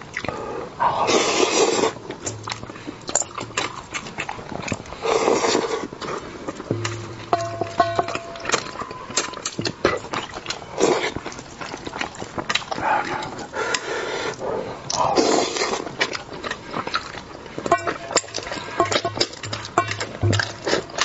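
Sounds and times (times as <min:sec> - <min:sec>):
wet smacking eating sounds: 0:00.0 - 0:21.0.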